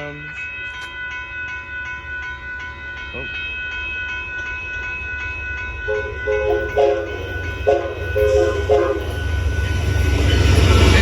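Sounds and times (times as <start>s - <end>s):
grade-crossing bell ringing: 0.0s - 11.0s
train low rumble: 0.0s - 11.0s
locomotive horn toots: 5.9s - 9.2s.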